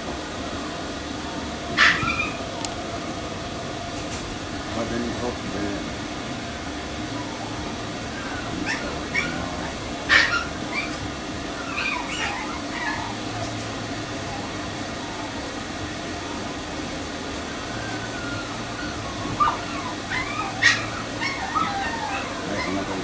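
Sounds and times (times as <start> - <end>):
pet dryer blowing: 0.0 - 23.0
puppy whining: 1.7 - 2.5, 6.7 - 16.6, 17.3 - 23.0.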